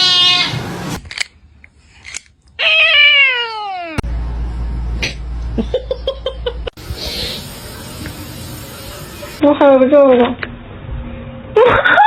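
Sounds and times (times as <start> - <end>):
cat meowing: 0.0 - 0.6.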